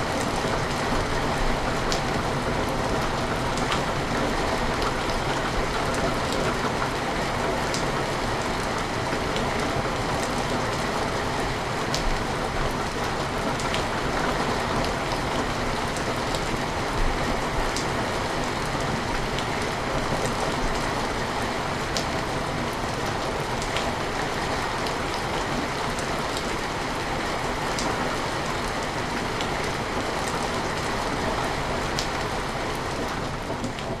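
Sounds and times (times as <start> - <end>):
rain on window glass: 0.0 - 34.0.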